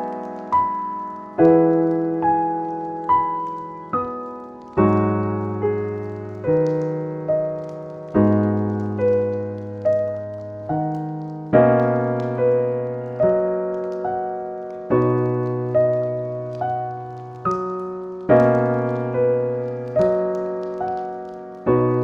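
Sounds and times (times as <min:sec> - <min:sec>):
slow solo piano music: 0:00.0 - 0:22.0.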